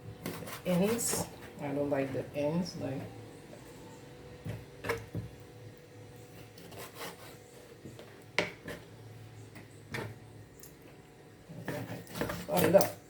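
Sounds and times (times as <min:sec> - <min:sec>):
knife scraping: 0:00.2 - 0:01.5, 0:06.3 - 0:07.7, 0:11.5 - 0:12.9.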